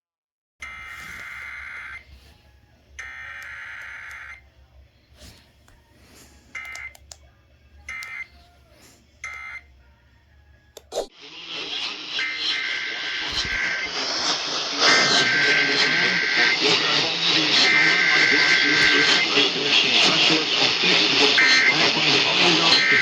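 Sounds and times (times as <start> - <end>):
click: 5.6 - 5.8, 6.5 - 7.3, 7.9 - 8.2.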